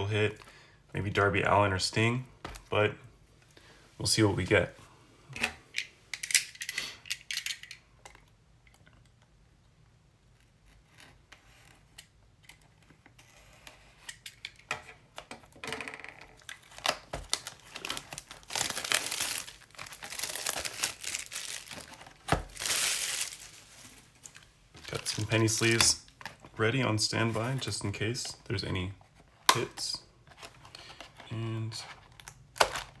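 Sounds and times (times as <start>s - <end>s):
plastic wrapping crinkling and tearing: 16.4s - 26.4s.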